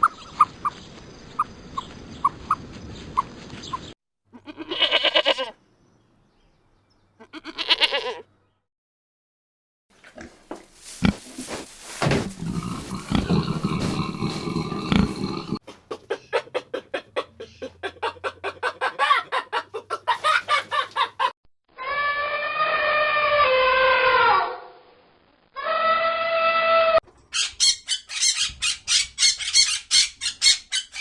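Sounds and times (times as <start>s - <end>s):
hen clucking: 10.0s - 21.3s.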